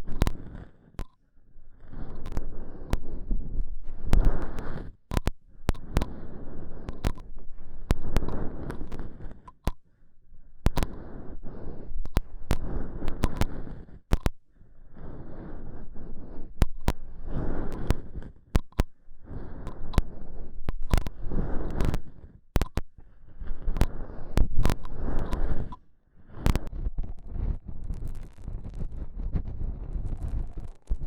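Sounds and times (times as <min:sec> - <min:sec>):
crackly rubbing: 0:00.0 - 0:10.0, 0:10.6 - 0:31.0
sharp clicks: 0:01.0 - 0:01.2, 0:04.2 - 0:06.2, 0:06.8 - 0:07.3, 0:07.9 - 0:09.9, 0:10.7 - 0:11.0, 0:12.0 - 0:14.4, 0:16.6 - 0:17.0, 0:17.6 - 0:19.0, 0:19.6 - 0:23.0, 0:23.7 - 0:25.8, 0:26.4 - 0:26.7.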